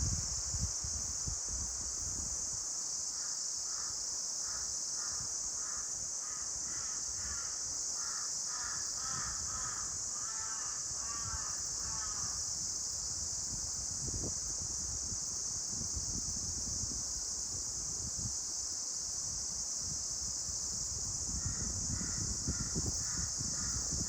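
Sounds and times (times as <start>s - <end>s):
steady high hiss: 0.0s - 24.0s
low wind rumble: 8.7s - 24.0s.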